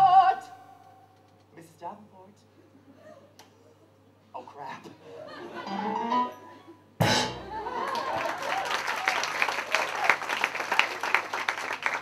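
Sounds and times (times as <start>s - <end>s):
loud musical hit: 7.0s - 7.7s
audience applause: 7.6s - 12.0s.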